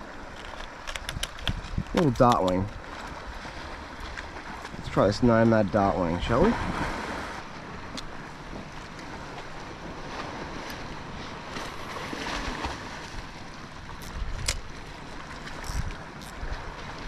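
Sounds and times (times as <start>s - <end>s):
small waves lapping on hull: 0.0s - 17.0s
wind on microphone: 0.9s - 5.3s, 6.1s - 7.4s, 15.5s - 17.0s.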